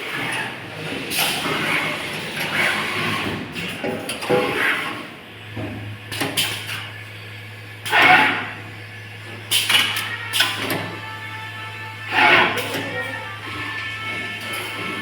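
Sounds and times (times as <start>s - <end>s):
machine humming: 7.3s - 15.0s.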